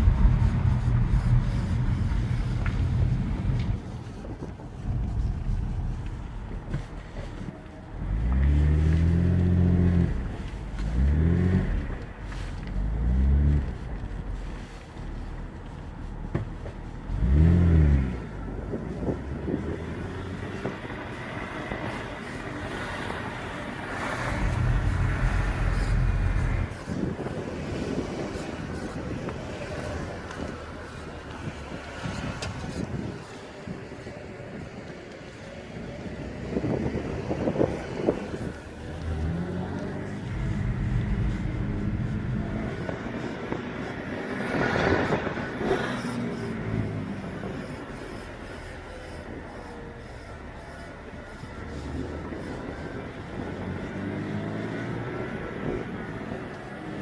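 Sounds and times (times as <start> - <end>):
low rumble: 0.0 - 19.8, 24.2 - 26.9, 36.4 - 44.1
car road and drivetrain drone: 0.0 - 57.0.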